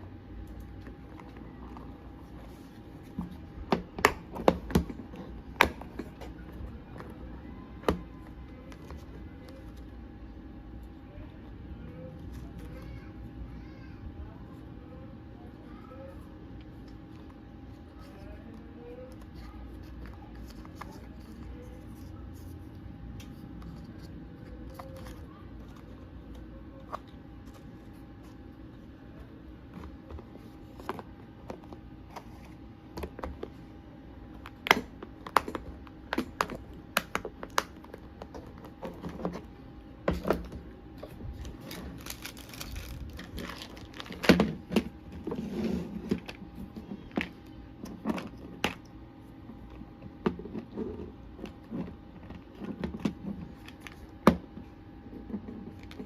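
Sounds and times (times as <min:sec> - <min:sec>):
faint steady hum: 0:00.0 - 0:56.0
plastic rustling: 0:40.1 - 0:47.2.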